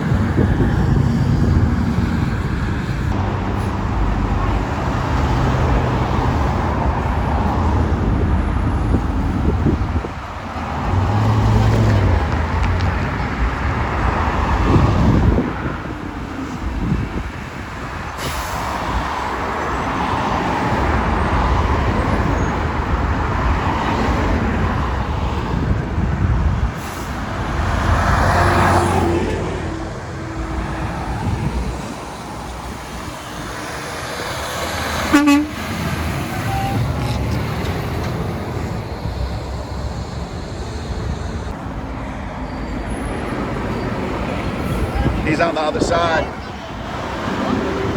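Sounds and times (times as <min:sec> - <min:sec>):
garbage truck diesel engine: 0:00.0 - 0:45.5
truck horn toot: 0:35.0 - 0:37.1.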